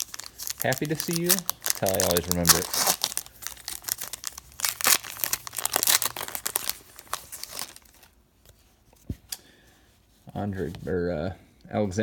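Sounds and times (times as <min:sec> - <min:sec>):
plastic wrapper crinkling and tearing: 0:00.0 - 0:08.2.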